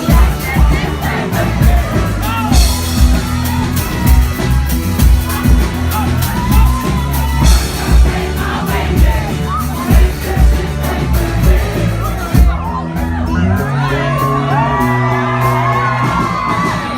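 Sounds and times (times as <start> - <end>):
person singing: 0.0 - 4.4
live rock band playing: 0.0 - 16.9.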